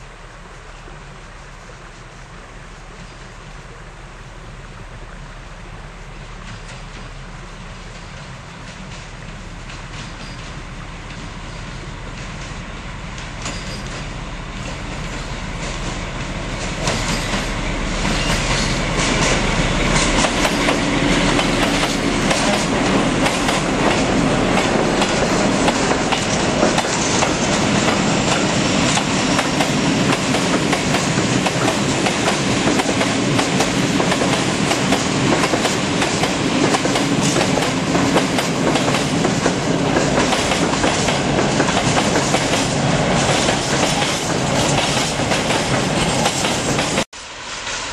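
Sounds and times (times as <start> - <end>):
freight train rolling past: 0.0 - 47.9
wheels clicking over rail joints: 12.0 - 47.1.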